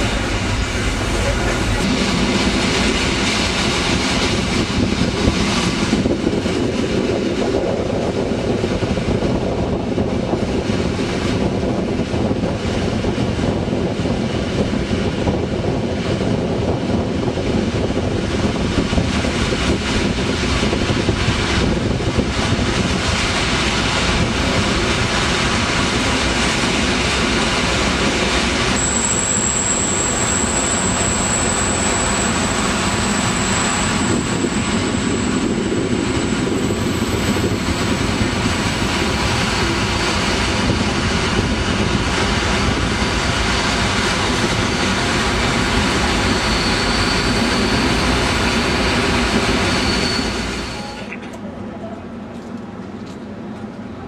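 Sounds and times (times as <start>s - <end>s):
train wheels rumbling on rails: 0.0s - 54.0s
thin high whine: 28.8s - 35.6s.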